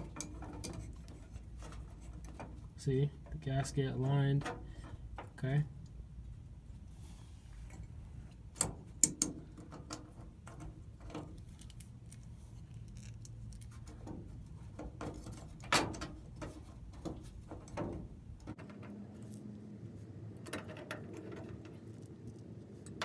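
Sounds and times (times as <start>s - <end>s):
small metal screws clicking: 8.6s - 14.1s.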